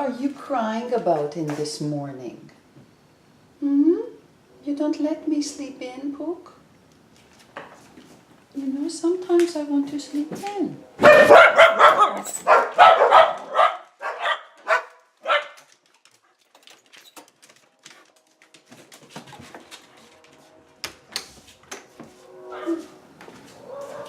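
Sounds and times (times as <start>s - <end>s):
puppy barking: 11.0s - 15.6s.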